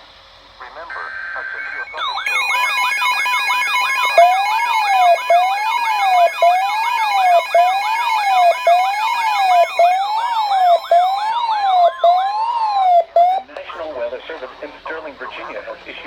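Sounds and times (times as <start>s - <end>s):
steady alert tone: 1.9s - 13.4s
warbling siren sweeps: 1.9s - 13.4s
low wailing siren: 1.9s - 13.5s.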